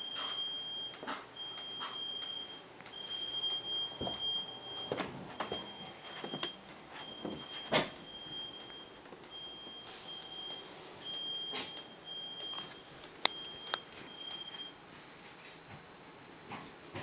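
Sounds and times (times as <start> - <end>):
smoke alarm beeping: 0.0 - 14.8.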